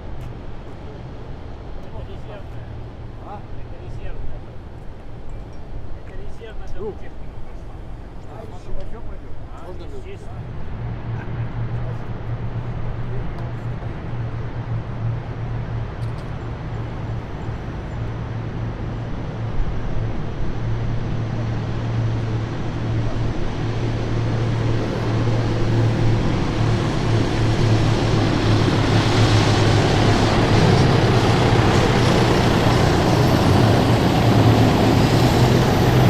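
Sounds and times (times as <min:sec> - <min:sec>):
road noise: 0:00.0 - 0:36.0
heavy vehicle engine rumble: 0:07.1 - 0:36.0.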